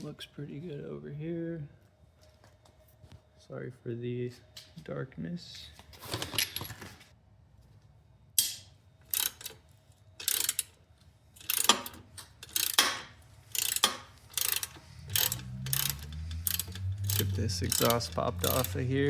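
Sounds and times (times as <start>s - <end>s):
ratchet wrench clicking: 8.4s - 9.6s, 10.2s - 10.8s, 11.4s - 19.0s.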